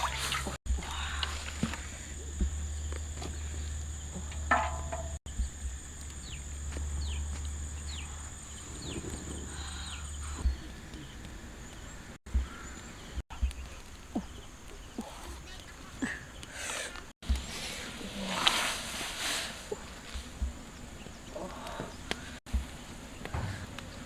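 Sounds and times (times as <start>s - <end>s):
insect drone: 0.7s - 11.2s.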